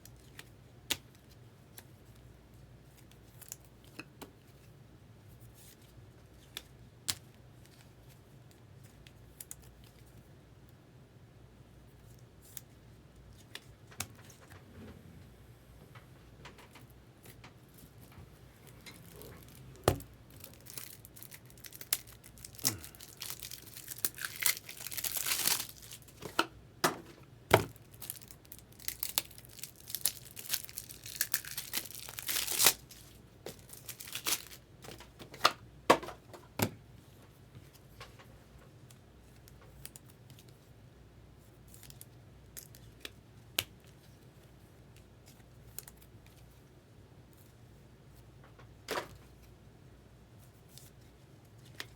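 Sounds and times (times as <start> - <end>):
packaging tearing and crinkling: 19.0 - 26.2, 27.7 - 35.0.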